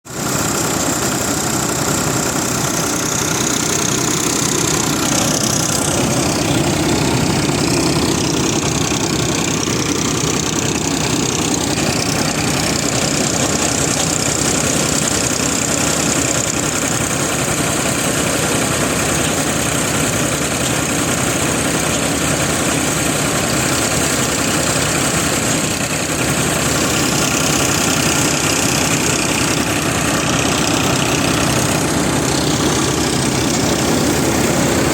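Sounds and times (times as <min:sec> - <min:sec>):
tractor diesel engine running: 0:00.0 - 0:34.9
machinery noise: 0:00.1 - 0:34.9.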